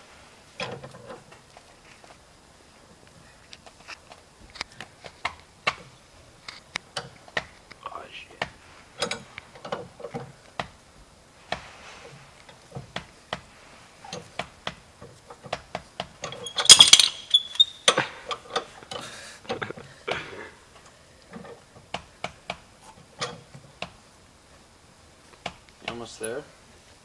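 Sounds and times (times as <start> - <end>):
car jack clicking and knocking: 8.4 - 10.8, 12.6 - 13.5, 14.1 - 19.7
scraping squeal: 16.3 - 18.0.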